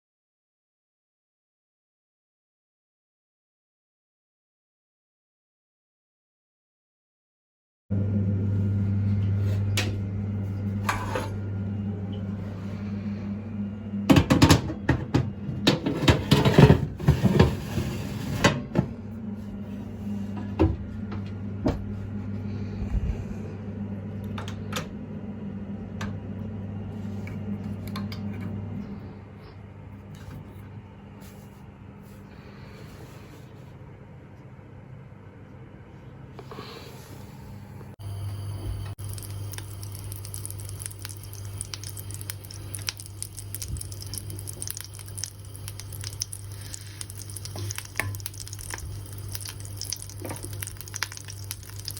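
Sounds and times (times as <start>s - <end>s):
kitchen appliance humming: 7.9s - 31.1s, 36.4s - 51.9s.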